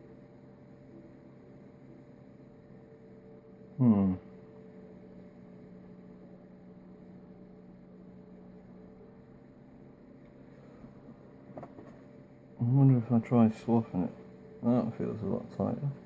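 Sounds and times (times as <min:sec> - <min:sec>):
low electrical hum: 0:00.0 - 0:16.0
person humming hmm: 0:03.8 - 0:04.3.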